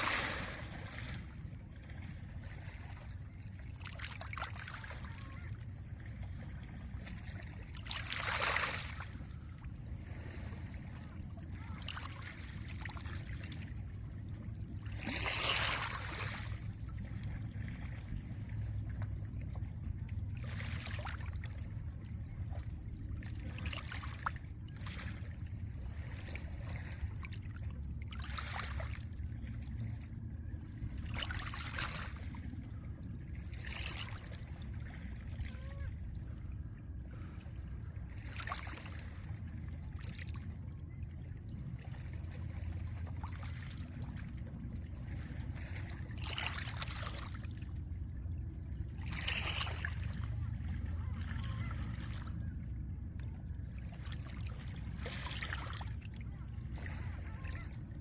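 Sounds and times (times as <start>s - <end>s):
low rumble of wind and water: 0.0s - 58.0s.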